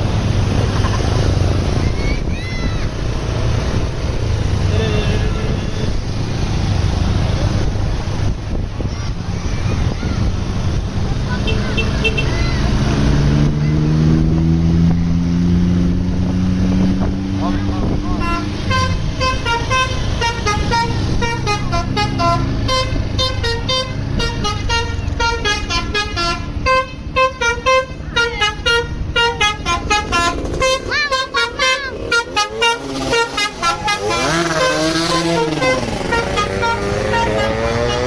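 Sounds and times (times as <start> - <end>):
bus engine running: 0.0 - 38.0
bus multi-tone horn melody: 4.6 - 6.1, 11.4 - 12.6, 17.4 - 38.0.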